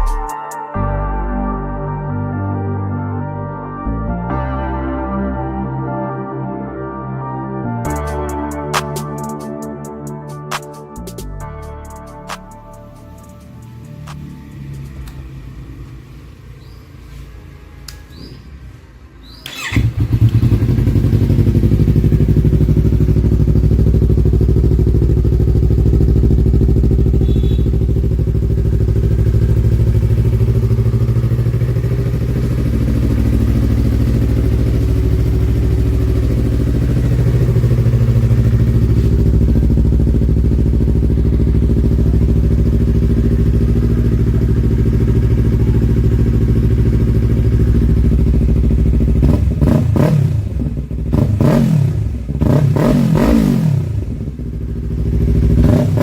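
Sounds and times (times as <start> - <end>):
motorcycle engine idling: 19.4 - 56.0.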